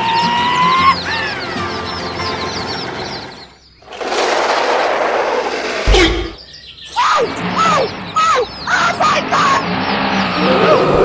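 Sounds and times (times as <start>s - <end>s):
sharp thump: 5.9s - 6.4s.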